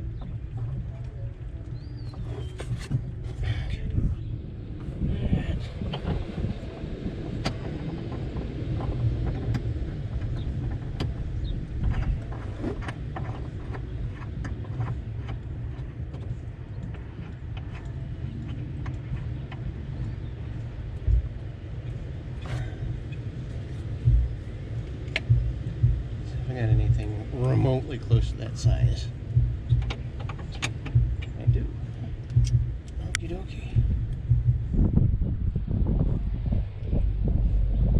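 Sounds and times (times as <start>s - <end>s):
steady low rumble: 0.0s - 37.9s.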